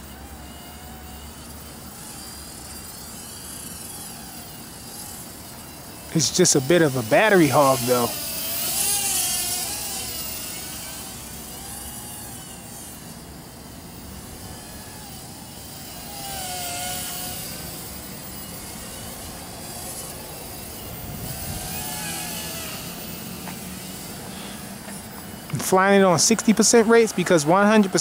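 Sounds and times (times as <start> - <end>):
quadcopter motors whining: 0.0 - 28.0
wind noise: 20.6 - 22.9.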